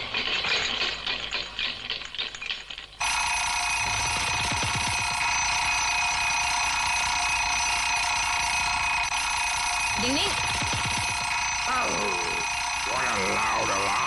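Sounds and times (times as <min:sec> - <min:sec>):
loud alarm ringing: 0:03.0 - 0:14.0.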